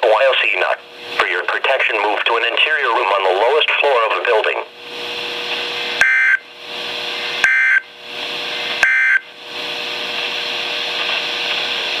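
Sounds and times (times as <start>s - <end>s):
radio hiss: 0.0s - 4.8s.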